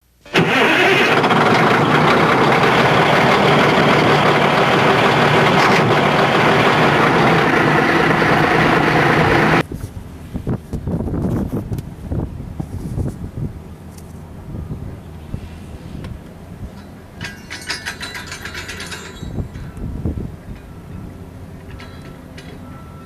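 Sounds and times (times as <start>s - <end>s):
mini excavator engine drilling soil: 0.3s - 9.6s
wind noise on microphone: 9.1s - 13.7s, 14.3s - 17.4s, 18.0s - 22.1s.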